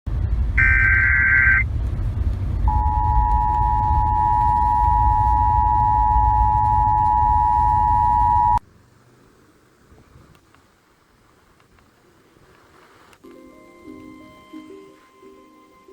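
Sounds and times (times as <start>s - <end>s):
steady warning alarm tone: 0.6s - 1.6s, 2.7s - 8.6s
warbling digital data burst: 0.6s - 1.6s
radio static hiss: 0.6s - 1.7s.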